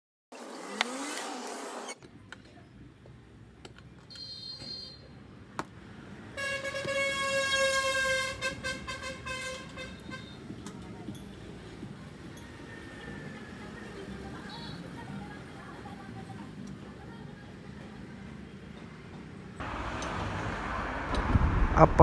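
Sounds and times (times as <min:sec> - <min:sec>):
vehicle horn honking: 0:04.1 - 0:05.0, 0:06.4 - 0:10.5
traffic rumble: 0:05.1 - 0:22.0.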